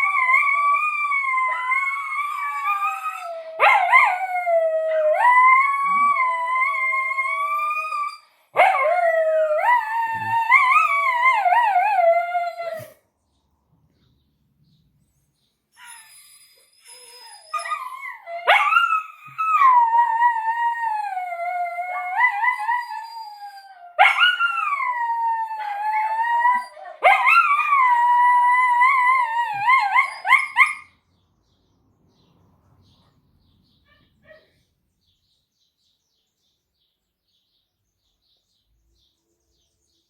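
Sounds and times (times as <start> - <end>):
small dog howling and whining: 0.0 - 13.0, 15.8 - 30.9.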